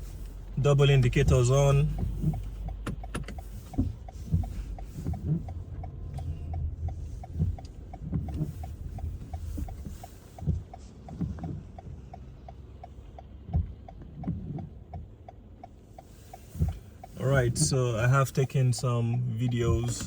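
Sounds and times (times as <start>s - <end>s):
hazard light flasher ticking: 0.1s - 20.0s.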